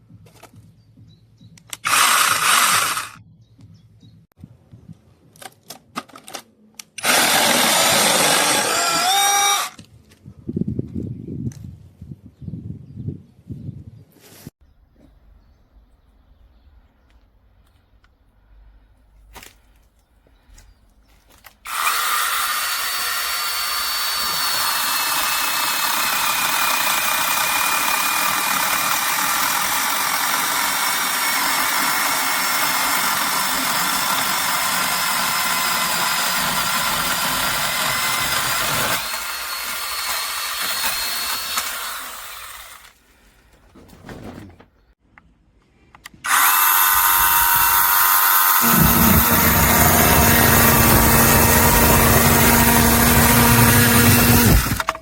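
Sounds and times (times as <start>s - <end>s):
battery chainsaw cutting branch: 1.7s - 3.2s, 7.0s - 9.8s, 21.6s - 43.0s, 46.2s - 55.0s.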